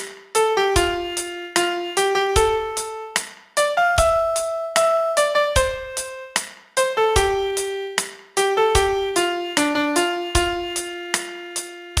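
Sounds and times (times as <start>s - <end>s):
solo piano melody: 0.0s - 12.0s.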